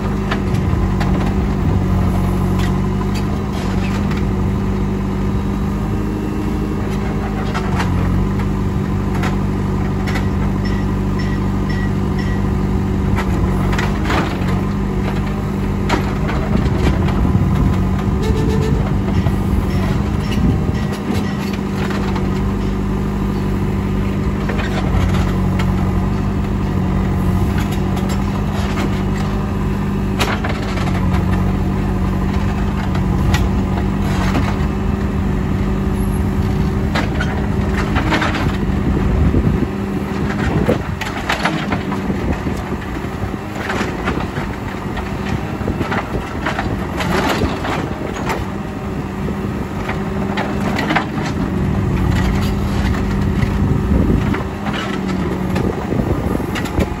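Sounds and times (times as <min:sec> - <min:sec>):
diesel engine running under load: 0:00.0 - 0:57.0
machine knocks and scrapes: 0:13.2 - 0:22.8.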